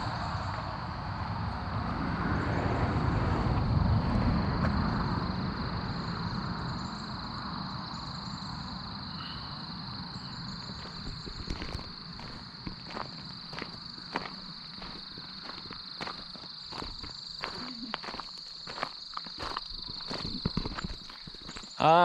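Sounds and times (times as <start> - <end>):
vehicle passing by: 0.0 - 7.8.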